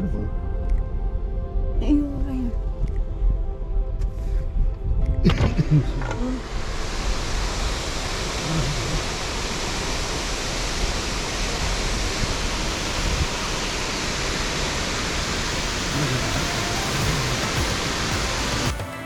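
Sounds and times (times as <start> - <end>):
large waterfall rushing: 6.2 - 18.8.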